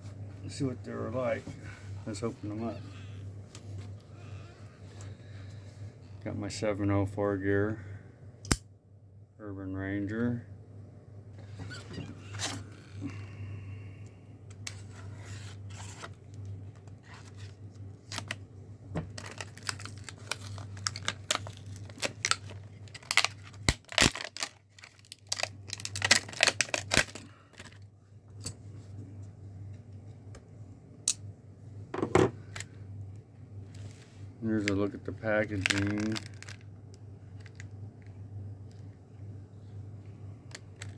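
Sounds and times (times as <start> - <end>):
snaps crackles and rustles: 19.1 - 27.8, 35.4 - 38.1
packaging being cut and torn: 19.2 - 27.2.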